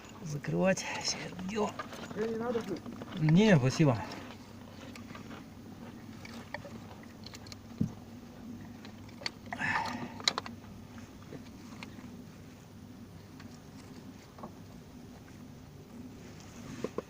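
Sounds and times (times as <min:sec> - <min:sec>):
steady low hum: 0:00.0 - 0:17.0
clicks of parts and tools: 0:08.8 - 0:10.6.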